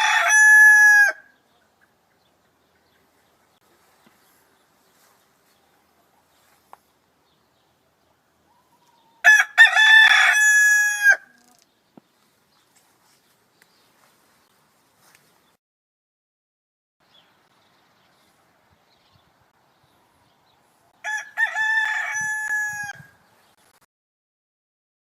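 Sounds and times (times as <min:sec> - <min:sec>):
rooster crowing: 0:00.0 - 0:01.3, 0:08.8 - 0:11.4, 0:21.0 - 0:23.2.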